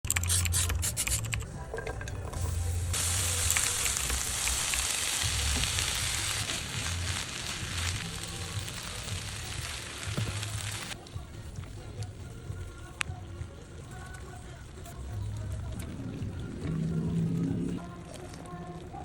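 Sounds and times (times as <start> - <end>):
food sizzling in a pan: 2.4 - 11.0.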